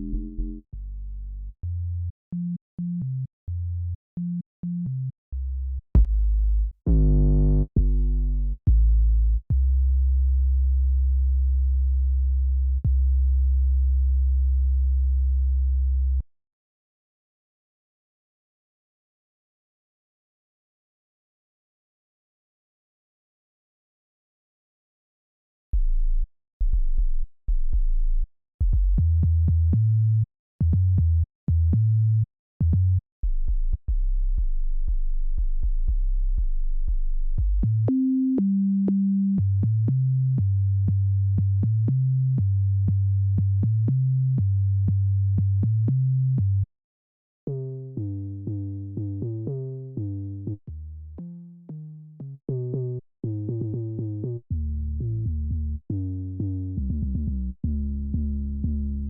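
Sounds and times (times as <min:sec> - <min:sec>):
plucky synth bass: 0:00.0 - 0:13.7, 0:36.8 - 0:46.6, 0:47.5 - 0:59.0
deep sub-bass line: 0:00.0 - 0:16.3, 0:25.8 - 0:46.7, 0:47.5 - 0:59.0.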